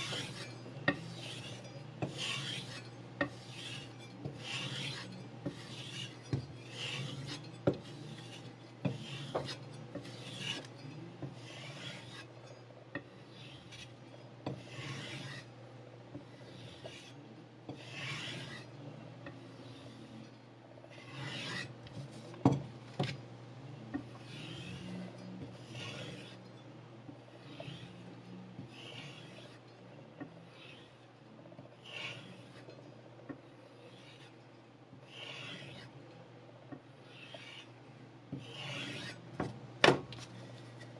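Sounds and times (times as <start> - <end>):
knife rasping on sharpening block: 0.0 - 15.5, 16.2 - 22.3, 23.9 - 26.6, 27.4 - 31.0, 31.8 - 32.8, 33.8 - 34.4, 35.1 - 35.9, 37.0 - 39.3.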